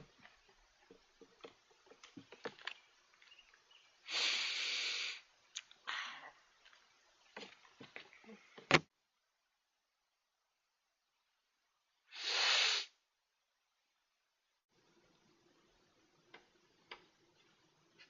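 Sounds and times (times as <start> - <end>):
small clicks and rustles: 0.0 - 3.6
person sniffing hard: 4.1 - 5.2, 12.1 - 13.0.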